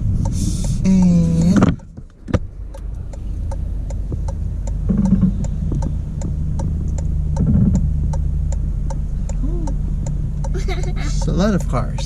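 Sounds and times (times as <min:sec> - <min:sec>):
car engine humming: 0:00.0 - 0:12.0
sharp ticking: 0:00.2 - 0:12.0.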